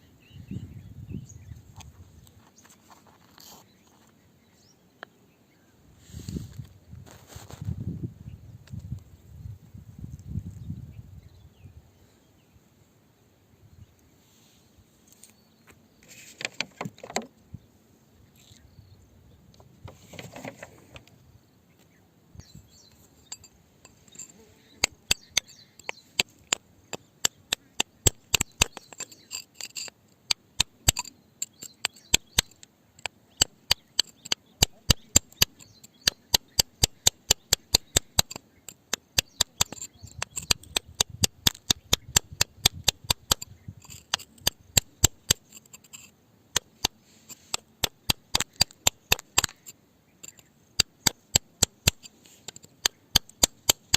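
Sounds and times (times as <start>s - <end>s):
rustling scrapes: 1.9s - 4.2s, 6.0s - 7.9s, 16.0s - 16.9s, 19.8s - 21.1s, 45.3s - 47.7s
hammer striking rock: 24.8s - 29.7s, 30.3s - 45.9s, 46.5s - 53.9s.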